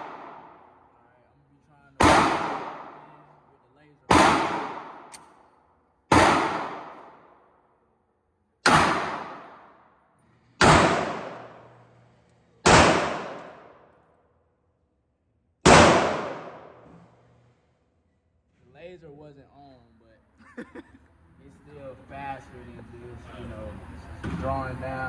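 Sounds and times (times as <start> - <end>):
pistol shots echoing: 0.0 - 0.7, 2.0 - 3.2, 4.1 - 5.2, 6.1 - 7.3, 8.6 - 9.8, 10.6 - 11.8, 12.6 - 13.8, 15.7 - 16.9.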